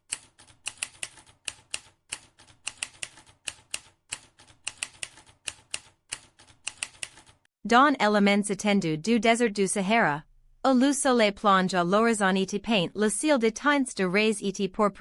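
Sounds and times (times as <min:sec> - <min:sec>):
keyboard typing clicks: 0:00.1 - 0:07.4.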